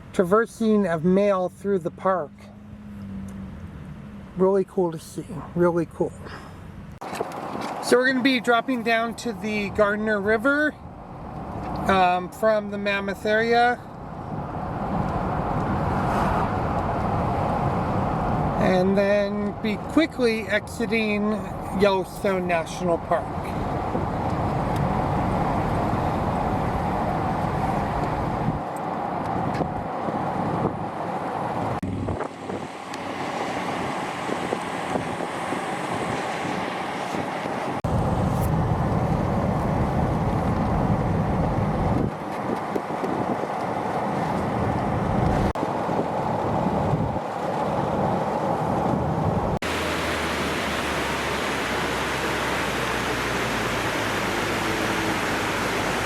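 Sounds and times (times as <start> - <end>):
car road and engine noise: 0.0 - 56.0.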